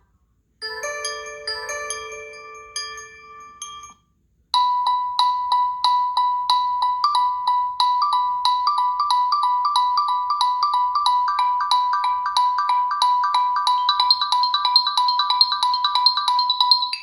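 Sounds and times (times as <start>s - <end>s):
phone chime ringtone: 0.6s - 4.0s
ringtone of short percussive notes: 0.6s - 4.0s, 4.6s - 17.0s.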